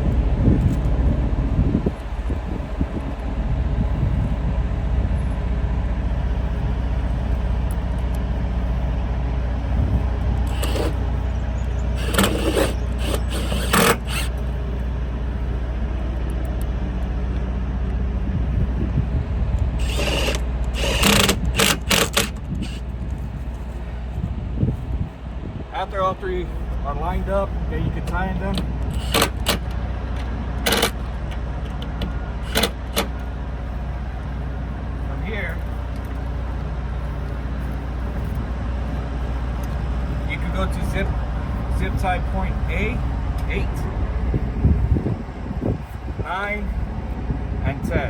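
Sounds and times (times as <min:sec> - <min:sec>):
steady low rumble: 0:00.0 - 0:48.0
power driver driving screws into metal: 0:10.5 - 0:11.0, 0:12.0 - 0:14.4, 0:19.8 - 0:22.8, 0:28.9 - 0:29.6, 0:30.6 - 0:31.0, 0:32.4 - 0:33.2.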